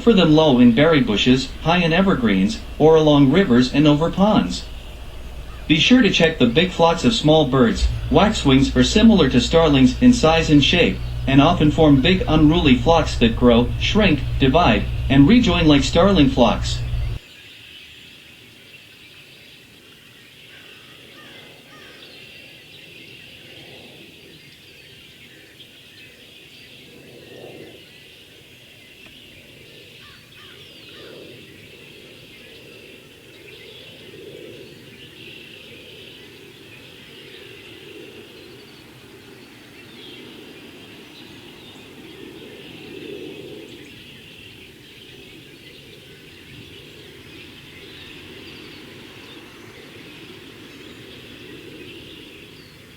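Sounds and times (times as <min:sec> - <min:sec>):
flock of birds chirping: 0:00.0 - 0:17.2
low rumble: 0:00.0 - 0:17.2.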